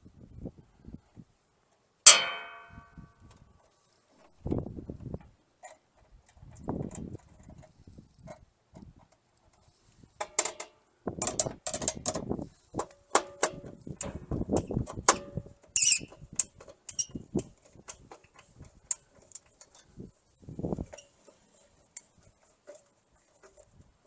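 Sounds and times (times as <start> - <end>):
tools clicking and scraping on metal: 12.8 - 20.0.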